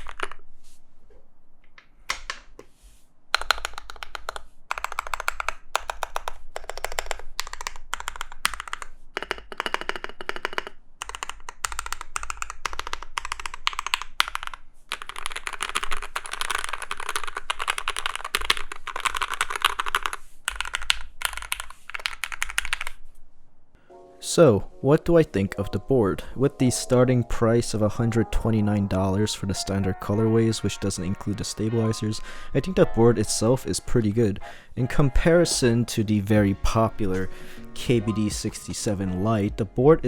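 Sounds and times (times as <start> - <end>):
muted mechanical keyboard typing: 0.0 - 0.4, 3.3 - 23.0.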